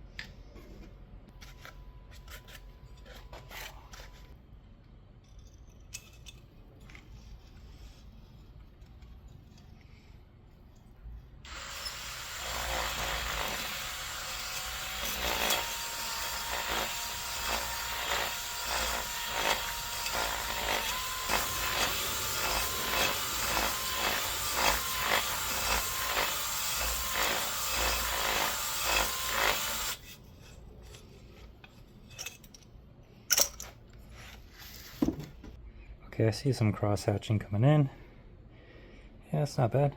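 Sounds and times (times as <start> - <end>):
electric drill motor whine: 11.5 - 30.0.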